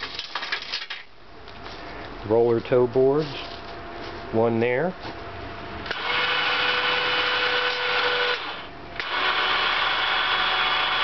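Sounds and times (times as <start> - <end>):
electric winch motor whining: 5.9 - 11.0.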